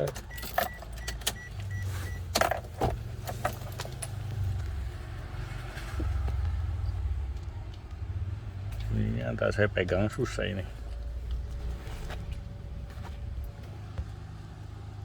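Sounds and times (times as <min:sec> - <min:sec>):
ignition clicks: 0:00.0 - 0:04.8
low hum: 0:09.8 - 0:15.0.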